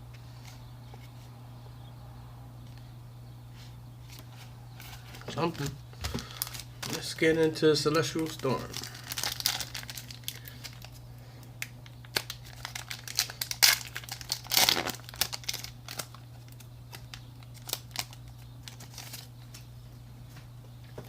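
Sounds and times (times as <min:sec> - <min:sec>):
foil wrapper crinkling: 0:04.8 - 0:19.7
foil ripping: 0:07.9 - 0:11.0, 0:11.6 - 0:19.6.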